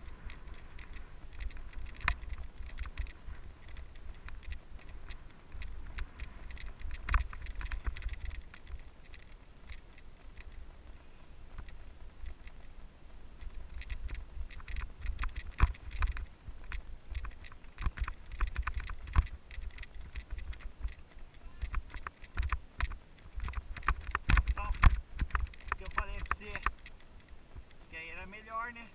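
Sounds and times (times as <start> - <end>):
bike rattling over rough trail: 0.0 - 28.9
wind buffeting microphone: 13.2 - 28.0.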